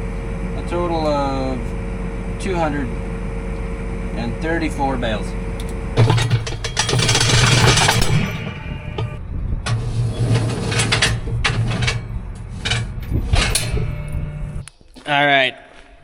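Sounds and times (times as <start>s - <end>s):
tractor engine running: 5.4s - 14.6s
clicks and knocks: 5.6s - 9.8s.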